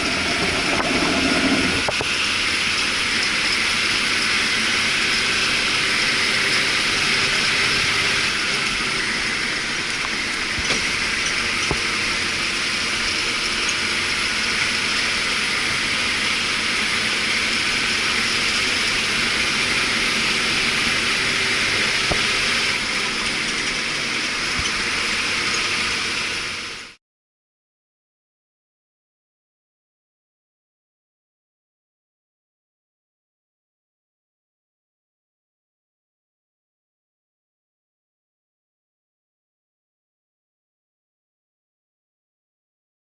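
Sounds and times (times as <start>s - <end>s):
low engine hum: 0.0s - 27.0s
train wheel and rail noise: 0.0s - 27.0s.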